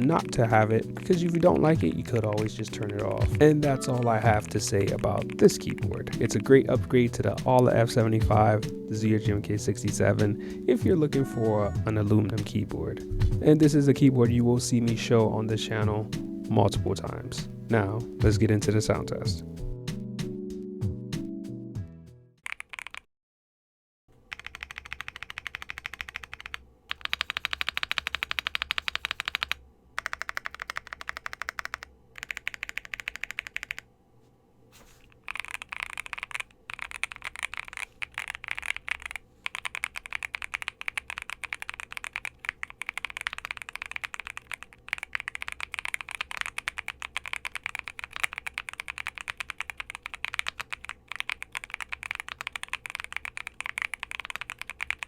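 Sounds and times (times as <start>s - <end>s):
mechanical keyboard typing: 0.0s - 8.8s, 22.4s - 23.1s, 24.3s - 33.8s, 35.2s - 55.0s.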